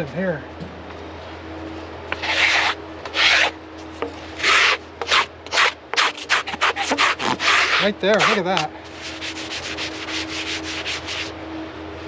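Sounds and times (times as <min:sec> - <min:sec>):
rubbing strokes on wood: 0:02.1 - 0:03.5, 0:04.4 - 0:11.3.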